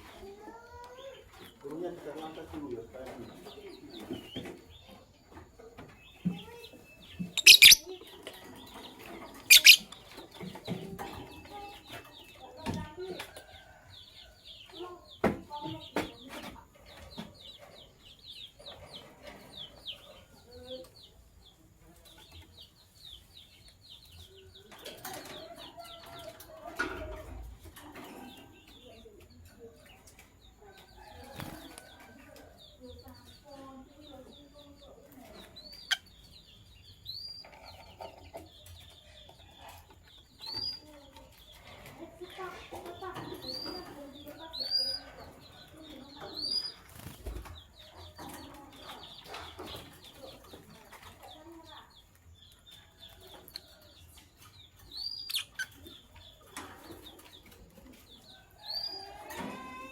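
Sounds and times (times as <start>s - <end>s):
lovebirds chirping: 0.0s - 59.9s
shrill bird calls: 7.4s - 7.9s, 9.5s - 9.9s.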